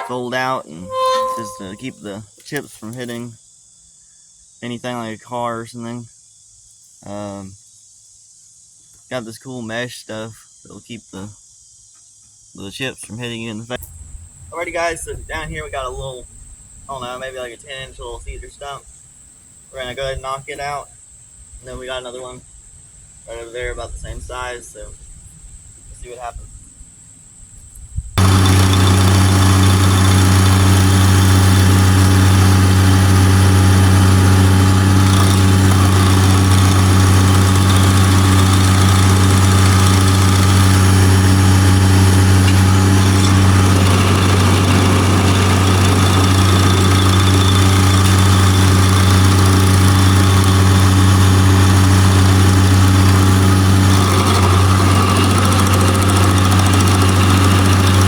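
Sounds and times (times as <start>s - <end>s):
engine running steadily: 28.2s - 58.0s.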